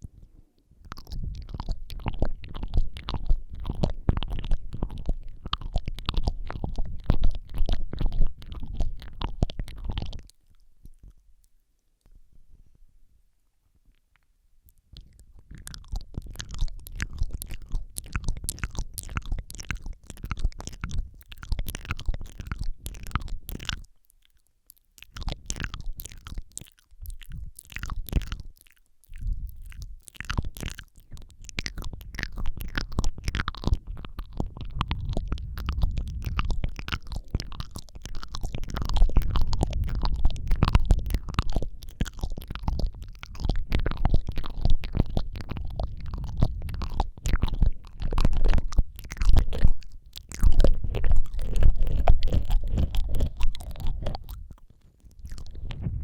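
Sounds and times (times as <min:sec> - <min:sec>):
wet mouth clicks and smacks: 0:00.0 - 0:12.2, 0:13.9 - 0:56.0
low breath rumble on microphone: 0:34.1 - 0:37.8, 0:45.4 - 0:48.5, 0:55.2 - 0:56.0.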